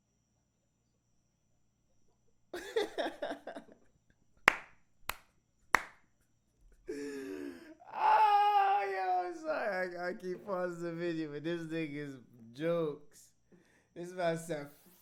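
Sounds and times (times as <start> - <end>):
sharp handclaps: 4.5 - 6.0.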